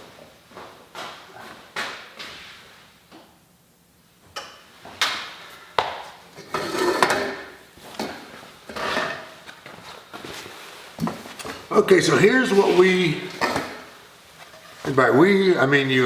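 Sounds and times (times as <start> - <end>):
objects knocking and clattering: 4.2 - 10.4, 13.3 - 15.0.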